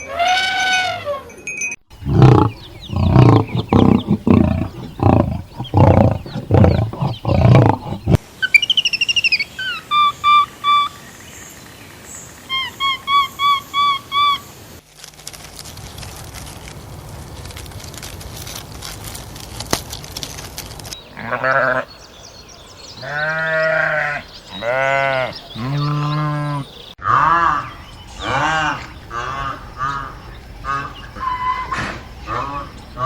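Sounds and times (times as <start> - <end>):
harsh farm animal calls: 1.9 - 11.0, 21.1 - 22.0, 23.0 - 33.0.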